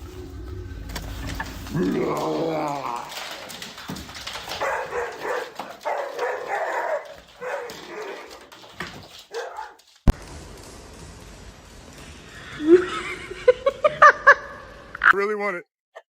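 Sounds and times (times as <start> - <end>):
dog barking and whining: 4.5 - 8.6, 9.3 - 9.9.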